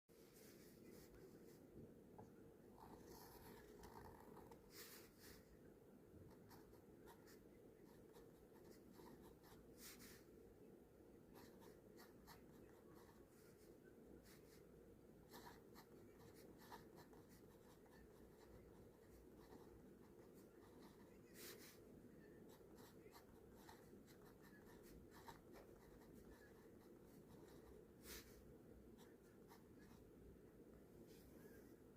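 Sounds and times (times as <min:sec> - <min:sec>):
pen scratching on paper: 0:02.8 - 0:05.4, 0:06.3 - 0:10.2, 0:11.3 - 0:14.6, 0:15.2 - 0:21.8, 0:22.4 - 0:28.4, 0:29.0 - 0:30.1.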